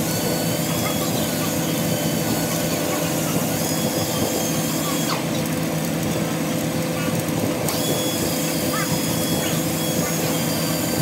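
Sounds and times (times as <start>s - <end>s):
welding arc crackling: 0.0s - 11.0s.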